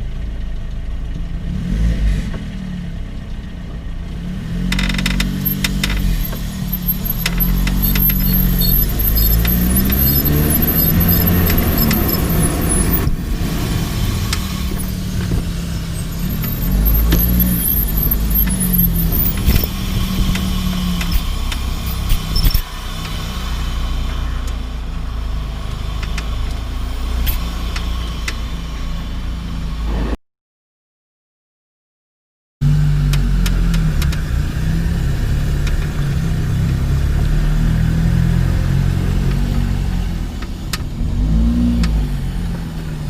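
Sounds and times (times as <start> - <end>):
road and tyre noise: 0.0 - 30.2, 32.6 - 43.0
car engine revving: 4.1 - 29.0, 32.6 - 43.0
sharp suspension clicks: 4.6 - 13.2, 14.1 - 23.2.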